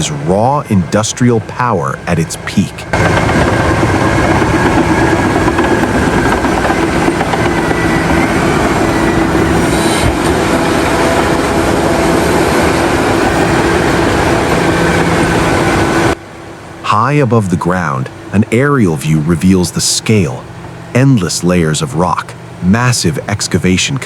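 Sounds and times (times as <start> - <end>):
steel tracks clattering: 0.0 - 16.2
diesel engine under load: 0.0 - 24.0.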